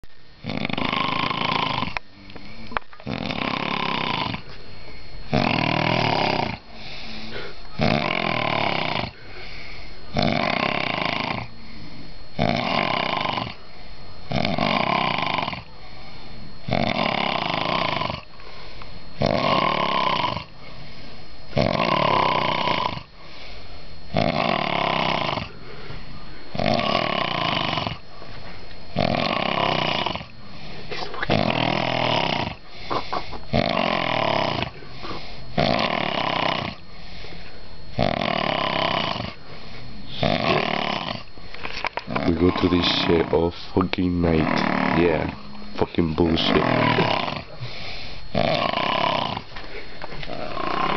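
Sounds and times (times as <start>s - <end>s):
man snoring loudly: 0.4s - 2.0s, 3.0s - 4.4s, 5.3s - 9.2s, 10.1s - 11.5s, 12.3s - 13.6s, 14.3s - 15.7s, 16.6s - 18.3s, 19.2s - 20.5s, 21.5s - 23.1s, 24.1s - 25.6s, 26.5s - 28.0s, 28.9s - 30.3s, 31.3s - 36.8s, 37.9s - 39.4s, 40.1s - 41.3s, 42.1s - 49.5s, 50.3s - 50.9s.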